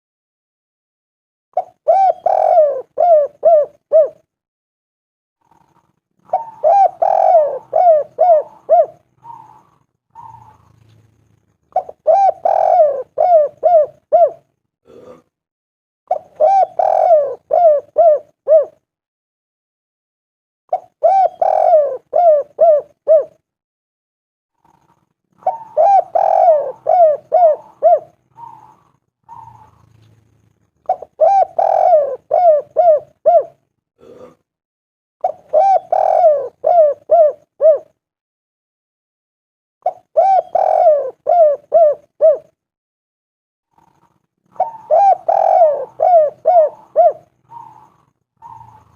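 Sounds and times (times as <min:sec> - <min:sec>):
dove cooing: 0:01.6 - 0:04.3, 0:05.4 - 0:15.2, 0:16.1 - 0:18.9, 0:20.7 - 0:23.4, 0:24.6 - 0:34.3, 0:35.2 - 0:38.0, 0:39.8 - 0:42.6, 0:43.7 - 0:48.9.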